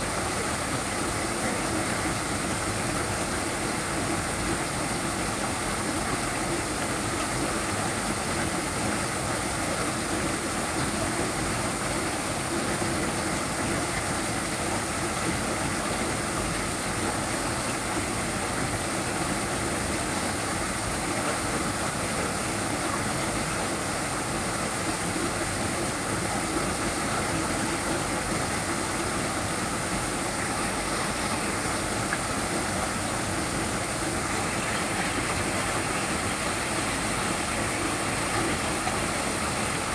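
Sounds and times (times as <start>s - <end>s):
waterfall pouring and splashing: 0.0s - 39.9s.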